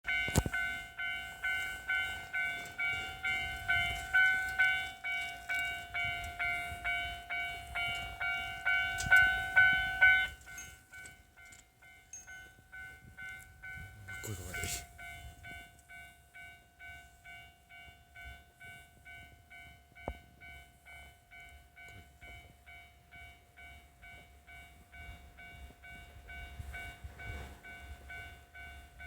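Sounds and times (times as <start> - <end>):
level crossing alarm bell: 0.0 - 29.0
diesel train rumbling past: 0.1 - 10.9.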